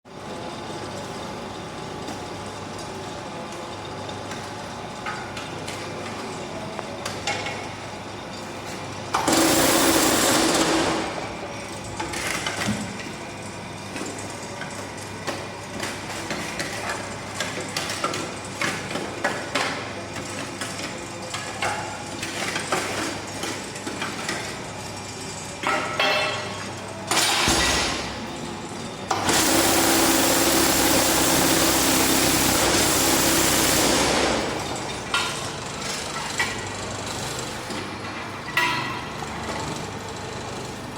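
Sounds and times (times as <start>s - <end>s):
machine motor running: 9.1s - 13.1s, 27.1s - 38.0s.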